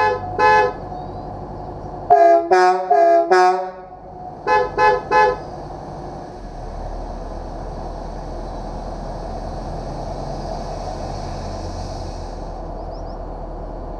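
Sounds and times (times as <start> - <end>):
bus horn toot: 0.0 - 0.9, 2.1 - 5.5
bus engine running: 0.0 - 13.9.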